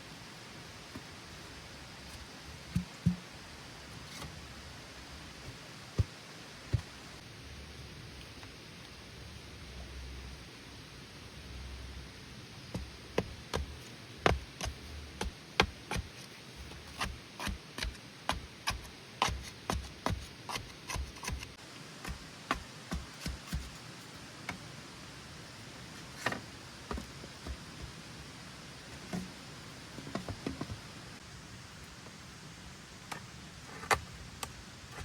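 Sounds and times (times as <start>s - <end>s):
sharp knocks on bamboo: 2.8s - 3.3s.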